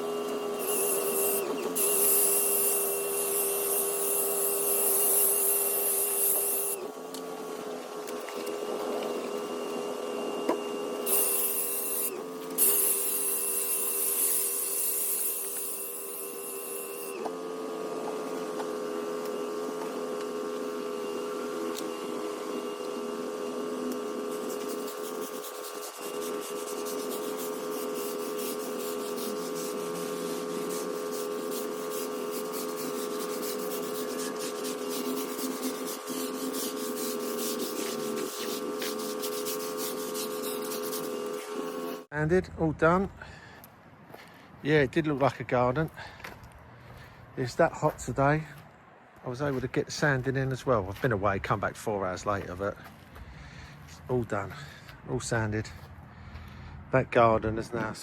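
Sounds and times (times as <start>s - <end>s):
pressure washer drone: 0.0s - 42.1s
fast scratchy rasp: 0.6s - 6.8s, 11.1s - 17.2s, 23.9s - 42.1s.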